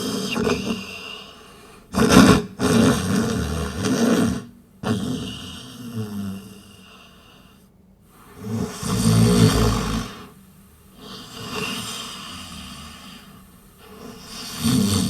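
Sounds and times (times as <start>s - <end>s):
breathy exhale: 0.0s - 1.9s, 6.5s - 15.0s
person snoring: 8.3s - 15.0s.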